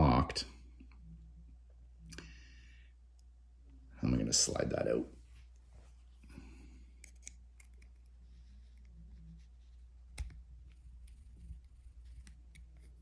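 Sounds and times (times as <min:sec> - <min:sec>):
padlock clicks and scrapes: 0:07.0 - 0:08.1.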